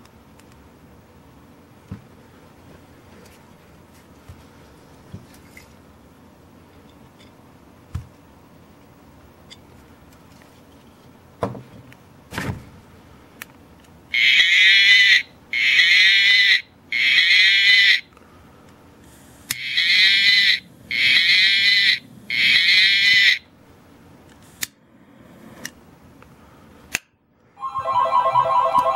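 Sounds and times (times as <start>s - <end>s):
electronic moo sound effect: 27.6s - 28.9s.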